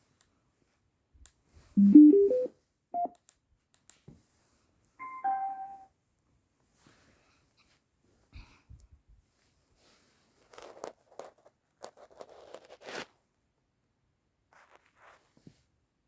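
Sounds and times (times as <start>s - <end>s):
alarm clock electronic tones: 1.8s - 3.1s, 5.0s - 5.9s.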